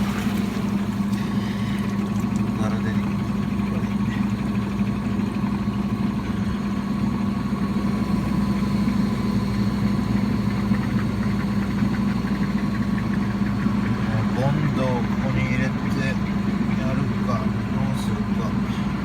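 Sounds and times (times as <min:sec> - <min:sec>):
washing machine spin cycle: 0:00.0 - 0:19.0.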